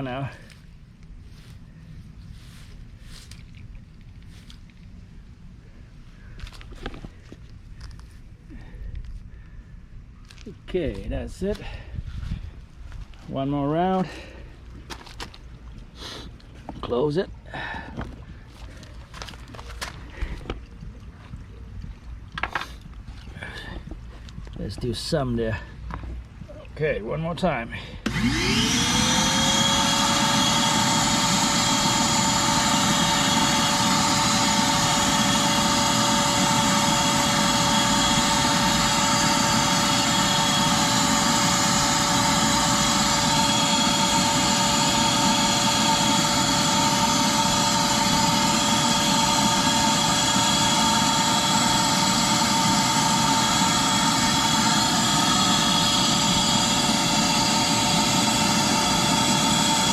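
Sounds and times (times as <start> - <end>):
vacuum motor whining: 28.0 - 59.9.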